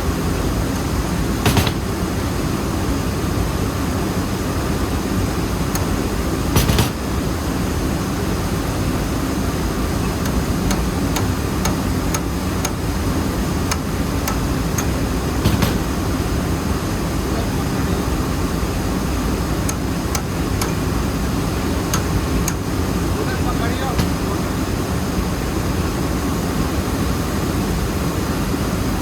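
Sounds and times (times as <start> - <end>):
sharp metallic knocks: 0.7 - 2.2, 6.5 - 7.2, 10.2 - 12.9, 13.6 - 16.3, 23.5 - 24.6.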